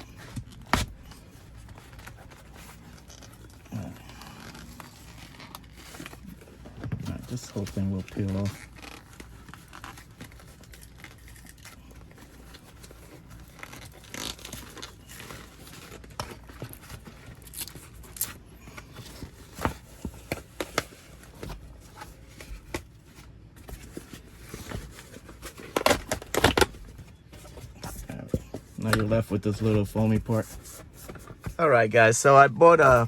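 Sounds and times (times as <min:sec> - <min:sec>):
upholstery cover tearing: 0:00.0 - 0:11.7, 0:13.2 - 0:18.3.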